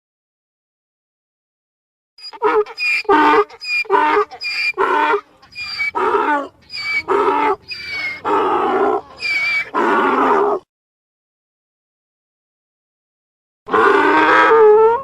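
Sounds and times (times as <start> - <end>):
donkey braying: 2.2 - 10.6, 13.7 - 15.0.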